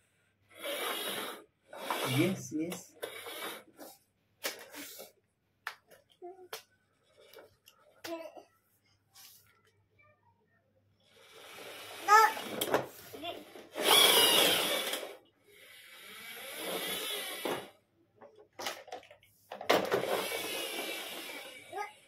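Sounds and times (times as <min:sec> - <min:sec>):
toy car whirring: 0:00.5 - 0:05.1, 0:11.0 - 0:17.8, 0:18.6 - 0:22.0.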